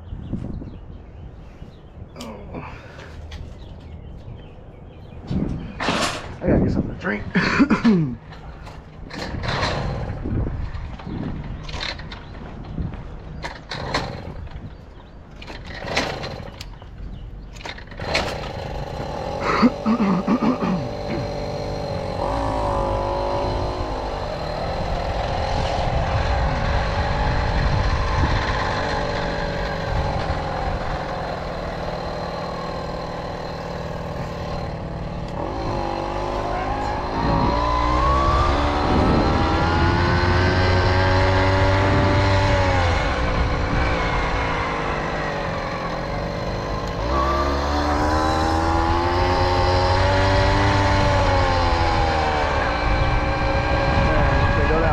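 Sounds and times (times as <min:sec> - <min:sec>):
moped engine running: 0:13.6 - 0:54.9.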